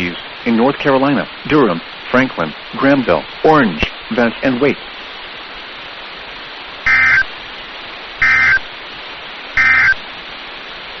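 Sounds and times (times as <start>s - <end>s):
radio static hiss: 0.0s - 11.0s
alert data tone bursts: 6.9s - 7.3s, 8.2s - 8.7s, 9.6s - 10.0s.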